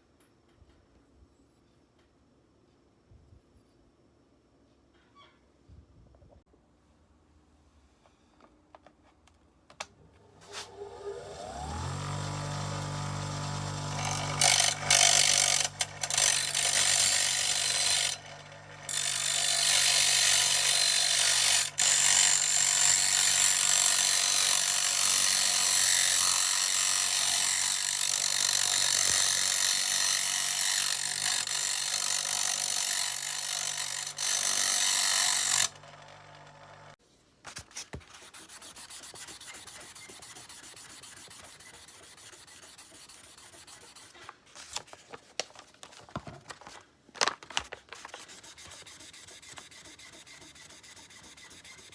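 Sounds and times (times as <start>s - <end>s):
power tool motor humming: 11.1s - 37.0s
grinding sanding noise: 38.2s - 44.3s, 48.1s - 51.9s.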